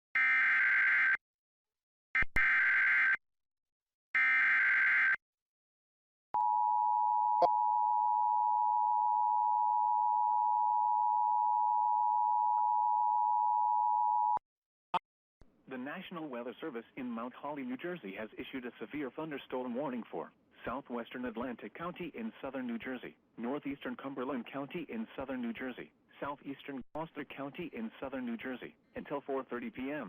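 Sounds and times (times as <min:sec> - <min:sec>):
steady dual-tone alarm: 0:00.2 - 0:01.2, 0:02.2 - 0:03.2, 0:04.2 - 0:05.2, 0:06.4 - 0:14.4.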